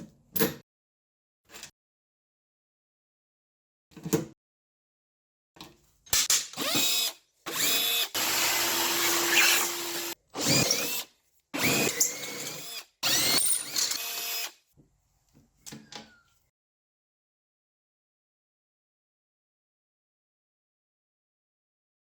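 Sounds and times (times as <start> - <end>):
electric drill whining: 6.6 - 11.0, 11.6 - 14.6.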